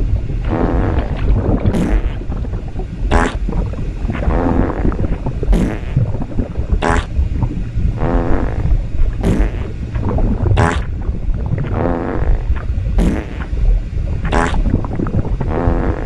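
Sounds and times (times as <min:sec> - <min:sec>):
low rumble: 0:00.0 - 0:16.0
cartoon fart sound effects: 0:00.5 - 0:02.2, 0:03.1 - 0:03.4, 0:04.2 - 0:06.0, 0:06.8 - 0:07.1, 0:08.0 - 0:09.7, 0:10.6 - 0:10.9, 0:11.6 - 0:12.4, 0:13.0 - 0:13.5, 0:14.3 - 0:14.6, 0:15.4 - 0:16.0.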